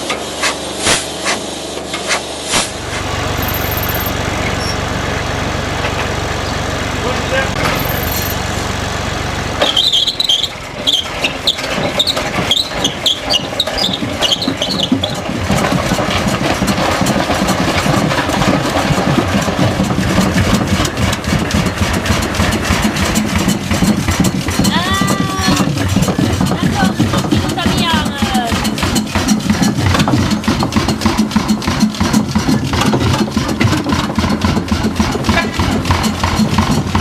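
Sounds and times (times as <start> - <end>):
large engine starting and knocking: 0.0 - 37.0
high squeaks: 3.3 - 4.9, 7.6 - 8.4, 9.6 - 15.3.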